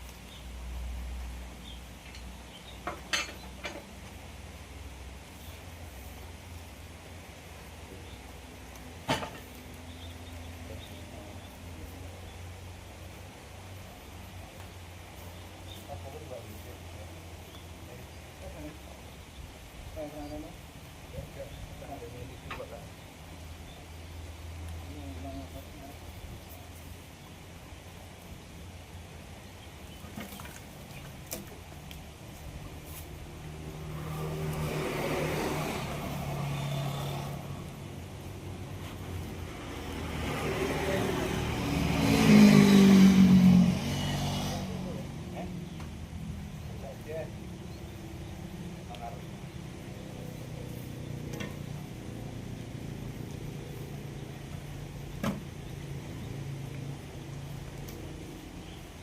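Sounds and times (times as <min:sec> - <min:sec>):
engine running: 0:29.8 - 0:59.0.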